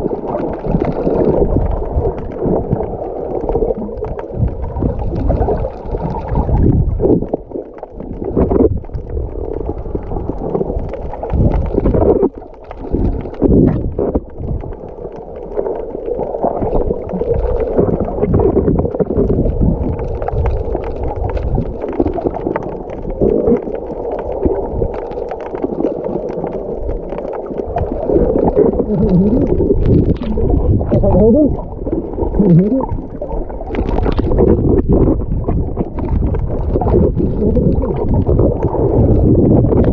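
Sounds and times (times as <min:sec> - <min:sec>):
muffled water sloshing and gurgling: 0:00.0 - 0:39.9
low rumbling: 0:27.7 - 0:39.9.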